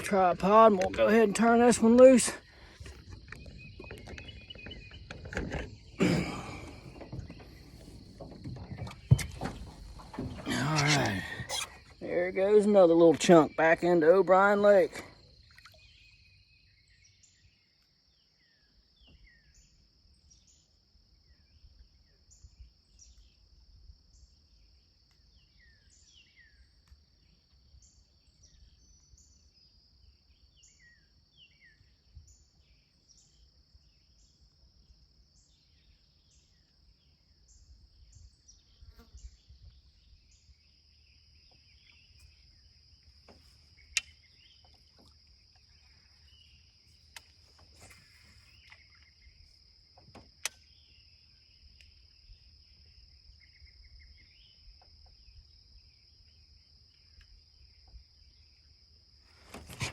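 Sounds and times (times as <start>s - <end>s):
sharp click: 43.9s - 44.2s.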